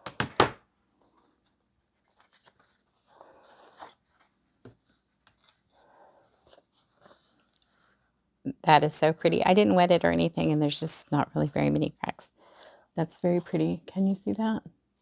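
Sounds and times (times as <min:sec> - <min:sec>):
paper and plastic rustling: 0:01.0 - 0:08.2.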